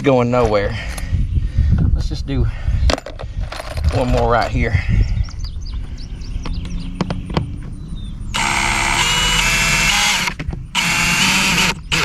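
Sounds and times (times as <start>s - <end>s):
drill driving a screw: 8.4s - 12.0s.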